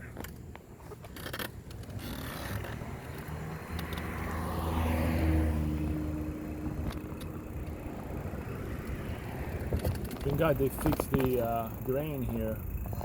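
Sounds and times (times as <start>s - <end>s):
car driving past: 2.2s - 10.6s.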